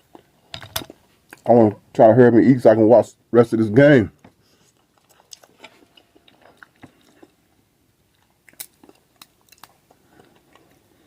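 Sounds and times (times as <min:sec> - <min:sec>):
chewing crab legs: 0:04.5 - 0:11.0.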